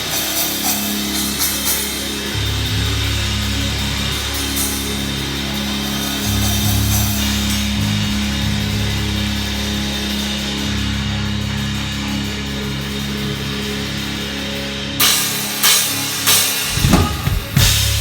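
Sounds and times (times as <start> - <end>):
cymbal hits: 0.0 - 8.2, 15.0 - 18.0
steady sustained tone: 0.0 - 18.0
deep bass notes: 0.8 - 15.0, 16.7 - 18.0.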